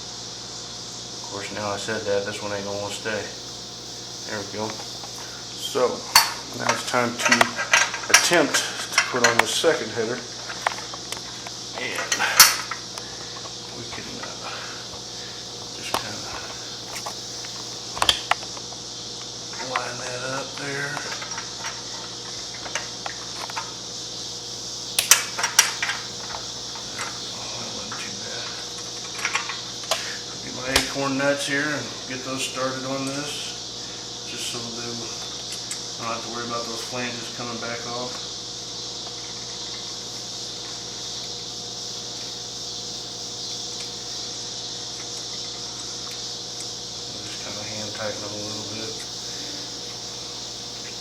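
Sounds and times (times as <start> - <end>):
steady hiss: 0.0 - 51.0
metal pipe clinking: 11.9 - 12.8.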